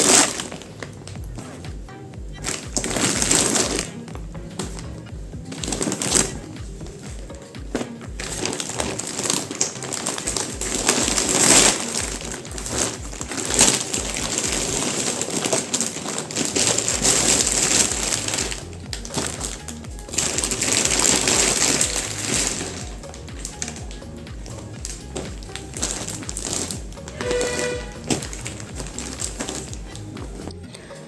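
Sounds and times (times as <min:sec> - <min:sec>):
plastic packaging crinkling: 0:00.0 - 0:01.3, 0:02.4 - 0:30.6
background music with low beat: 0:00.0 - 0:31.0.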